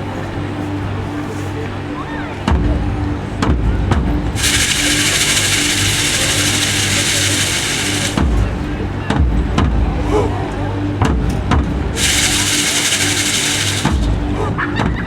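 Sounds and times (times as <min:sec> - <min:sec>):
marching band playing low notes: 0:02.4 - 0:14.6
loud sustained hiss: 0:04.4 - 0:08.4, 0:12.0 - 0:14.3.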